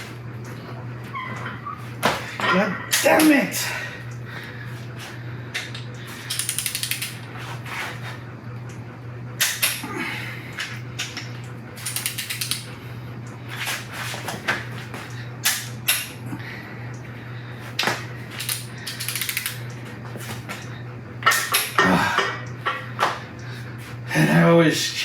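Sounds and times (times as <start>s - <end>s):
steady low hum: 0.0s - 25.0s
hand ratchet clicking: 6.3s - 7.3s, 11.8s - 12.7s, 18.4s - 19.7s.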